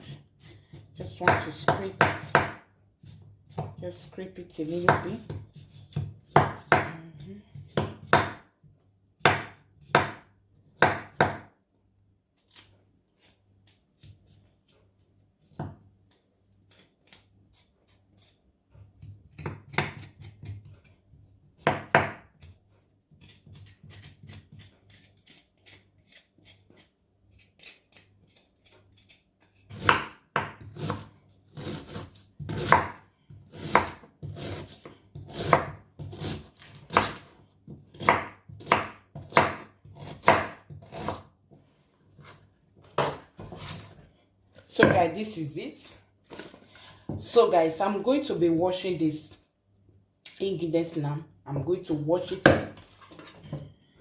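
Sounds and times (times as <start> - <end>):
knife chopping on cutting board: 0.1 - 8.5, 9.2 - 11.5, 18.9 - 20.8, 21.6 - 22.6, 23.2 - 26.9, 28.9 - 41.3, 52.3 - 53.3.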